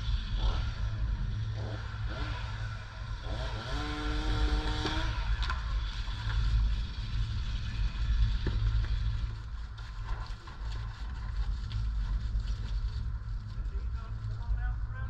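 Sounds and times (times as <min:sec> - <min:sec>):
small engine revving: 0:00.0 - 0:06.1.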